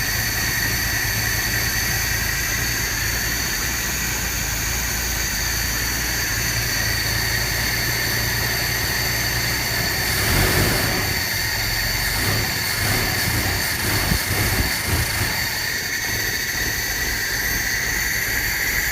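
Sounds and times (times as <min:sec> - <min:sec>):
car engine idling and sputtering: 0:00.0 - 0:18.9.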